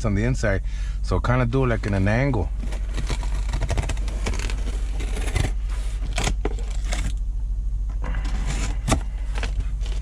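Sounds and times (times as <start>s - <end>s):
knife cutting tape and cardboard: 2.6s - 7.2s.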